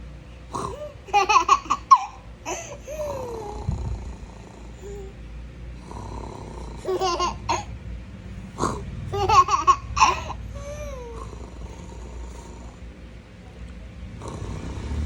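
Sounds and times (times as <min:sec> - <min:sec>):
man snoring: 0:00.5 - 0:00.9, 0:03.0 - 0:05.1, 0:05.8 - 0:07.0, 0:08.5 - 0:08.8, 0:10.4 - 0:12.8, 0:14.1 - 0:15.0
young child laughing: 0:09.1 - 0:11.2.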